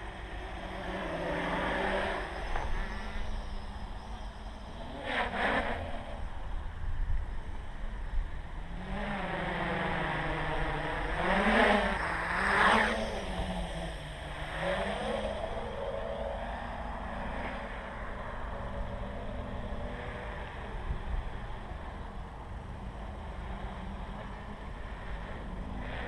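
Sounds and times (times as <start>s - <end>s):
quadcopter motors whining: 0.0s - 26.0s.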